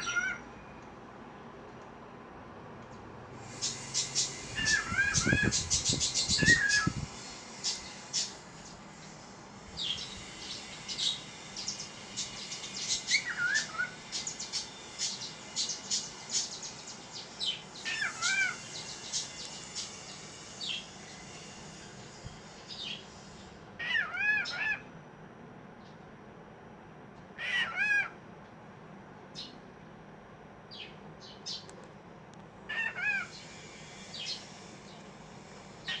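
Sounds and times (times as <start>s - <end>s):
bird mewing calls: 0.0s - 0.5s, 3.4s - 8.4s, 9.8s - 16.6s, 17.4s - 21.3s, 32.7s - 34.5s
high bird chirps: 3.6s - 8.8s.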